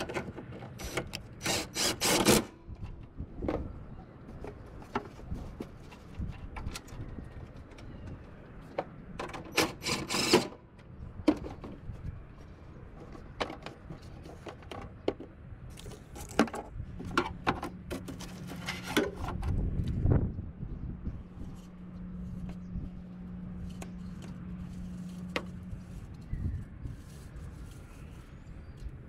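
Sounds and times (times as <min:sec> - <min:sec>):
hand tools and metal parts rattling: 0:00.0 - 0:20.0.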